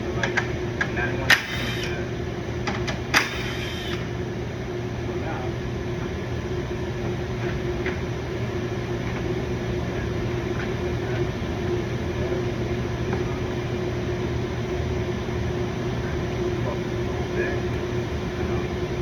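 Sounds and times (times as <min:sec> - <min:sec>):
mechanical hum with rumble: 0:00.0 - 0:19.0.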